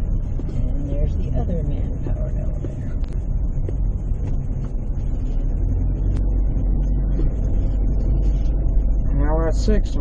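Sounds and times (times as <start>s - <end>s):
car engine and tyre rumble: 0.0s - 10.0s.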